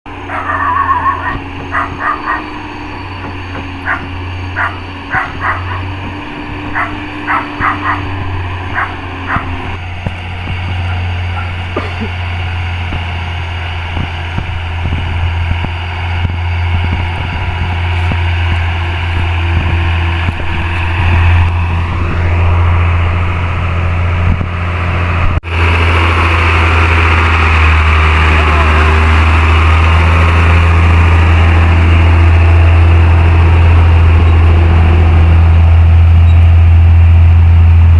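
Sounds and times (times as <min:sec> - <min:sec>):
diesel truck engine droning: 0:00.1 - 0:37.9
dog barking: 0:00.3 - 0:02.5, 0:03.8 - 0:05.8, 0:06.7 - 0:08.1, 0:08.7 - 0:09.5.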